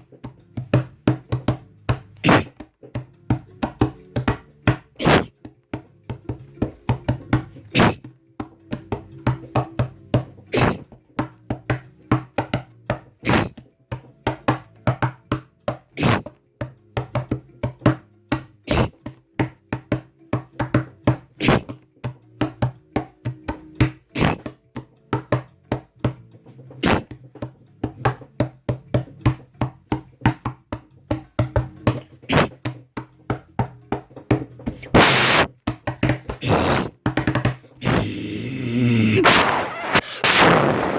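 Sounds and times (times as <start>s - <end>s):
quick knocks taps and thwacks: 0.0s - 38.6s
hissing burst: 34.9s - 35.5s, 37.8s - 40.9s.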